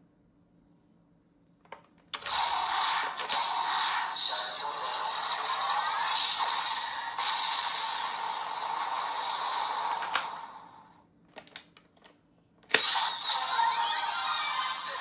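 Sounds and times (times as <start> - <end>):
plastic toy clicks: 1.7 - 2.4, 3.1 - 3.5, 9.6 - 10.4, 11.4 - 11.9, 12.7 - 13.0
toy electronic sound effects: 12.7 - 15.0.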